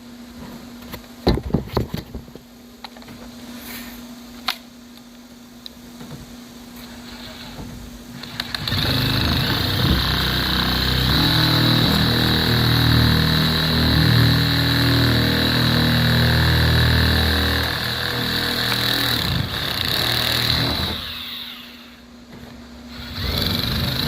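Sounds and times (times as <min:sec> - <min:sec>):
power drill shear cutting sheet metal: 0:08.2 - 0:22.0, 0:22.9 - 0:24.0.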